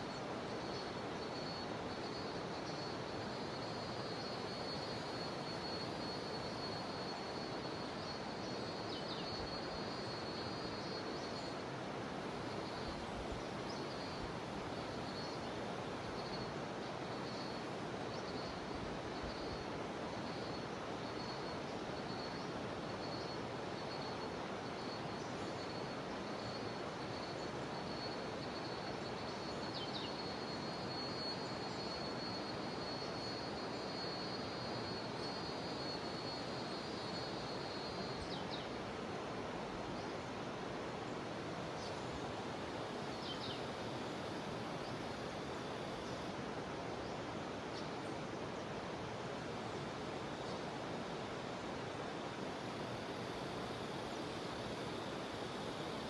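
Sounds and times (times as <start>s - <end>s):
cicadas droning: 0.0s - 56.0s
river water rushing: 40.4s - 56.0s.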